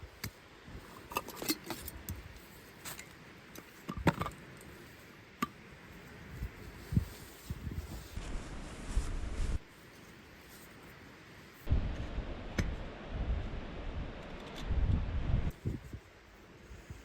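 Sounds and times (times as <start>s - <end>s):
faint steady hiss: 0.0s - 17.0s
clicks and knocks of camping gear: 0.2s - 4.8s.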